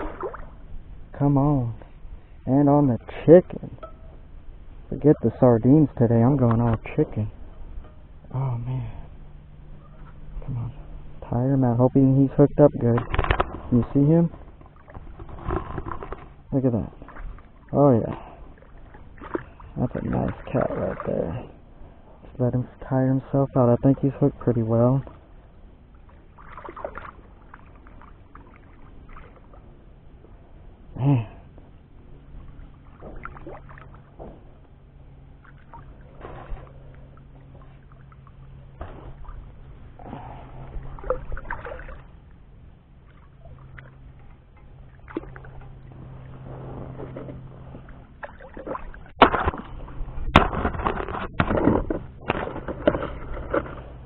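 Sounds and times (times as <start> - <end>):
water splashing and sloshing: 0.0 - 8.2, 9.6 - 30.8, 31.7 - 54.0
steady low hum: 0.0 - 54.0
knocks against a kayak: 48.6 - 53.8.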